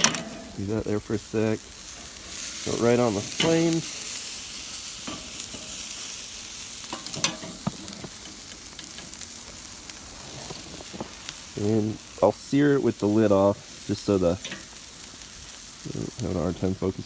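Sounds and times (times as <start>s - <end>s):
meat sizzling on grill: 0.0s - 17.0s
sharp pops: 6.8s - 11.6s.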